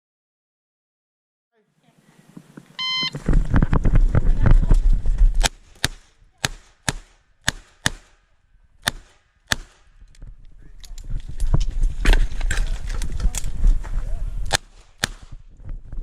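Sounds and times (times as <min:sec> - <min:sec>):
shot timer beep: 0:02.8 - 0:03.1.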